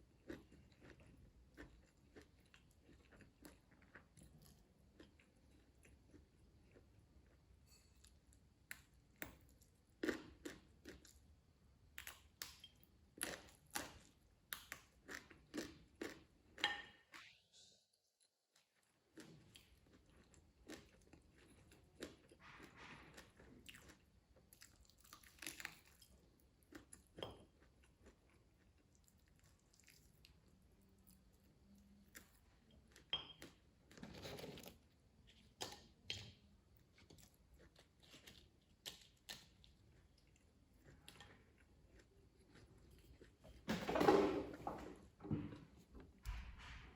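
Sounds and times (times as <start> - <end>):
person chewing and crunching food: 0.0 - 17.4, 18.5 - 43.6.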